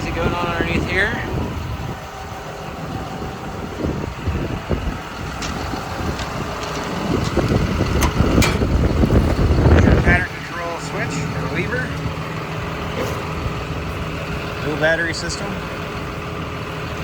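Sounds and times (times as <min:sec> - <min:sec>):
diesel engine idling: 0:00.0 - 0:17.0
sharp clicks and knocks: 0:06.2 - 0:09.5.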